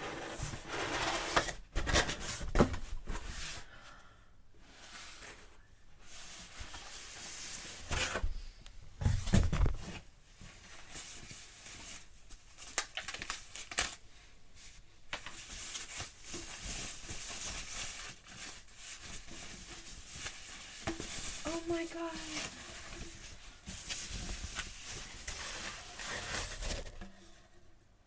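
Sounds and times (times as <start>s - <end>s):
packaging rustling and crinkling: 9.1s - 14.0s, 14.6s - 27.5s
packaging being torn open: 12.6s - 14.0s.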